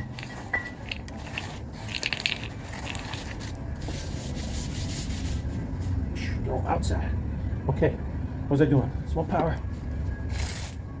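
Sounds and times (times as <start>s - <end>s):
rubbing and scraping: 0.0s - 6.1s
steady low hum: 0.0s - 11.0s.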